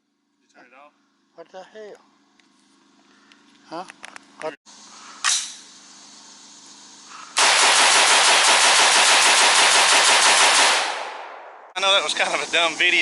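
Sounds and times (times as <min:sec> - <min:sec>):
rapid automatic gunfire: 0:07.4 - 0:11.3.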